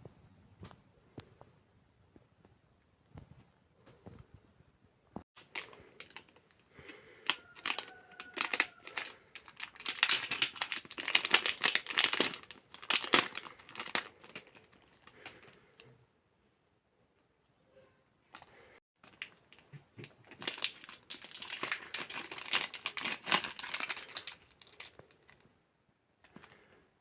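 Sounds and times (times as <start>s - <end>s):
plastic packaging crinkling: 5.4s - 15.6s, 18.3s - 25.4s.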